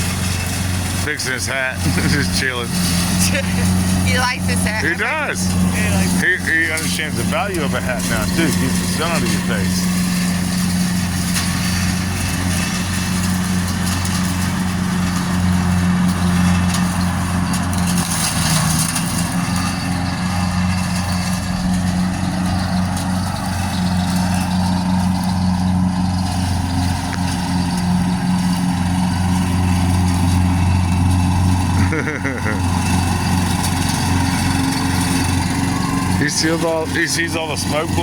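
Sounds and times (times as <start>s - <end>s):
lawn mower engine running: 0.0s - 38.0s.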